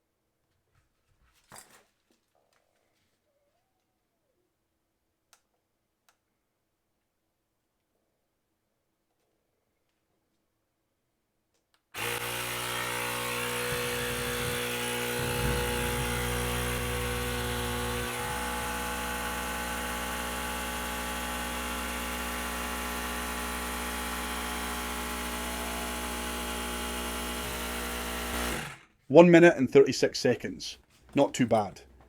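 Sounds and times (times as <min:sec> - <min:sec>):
air compressor running: 0:12.0 - 0:28.9.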